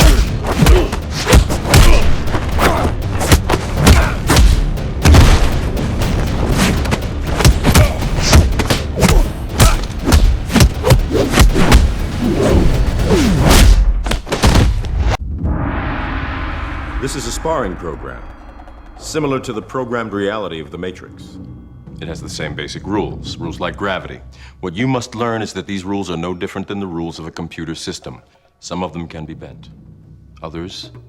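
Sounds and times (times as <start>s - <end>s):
music: 0.0s - 31.0s.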